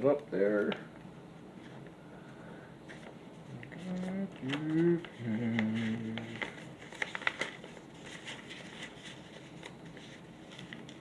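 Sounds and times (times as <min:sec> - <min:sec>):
paper crinkling and rustling: 0:02.9 - 0:11.0.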